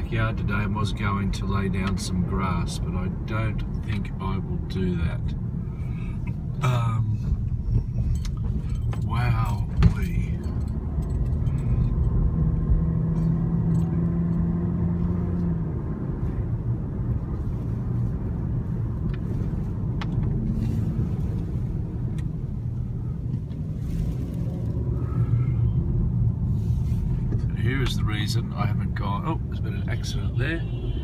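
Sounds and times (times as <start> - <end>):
car interior rumble: 0.0 - 31.0.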